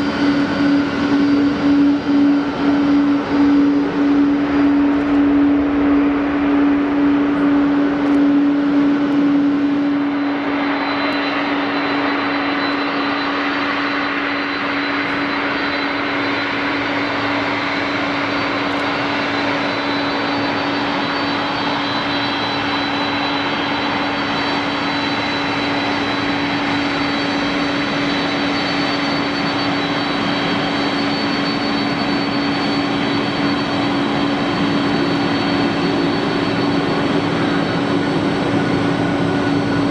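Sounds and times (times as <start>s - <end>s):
jet engines low hum: 0.0s - 39.9s
thin high whine: 0.0s - 39.9s.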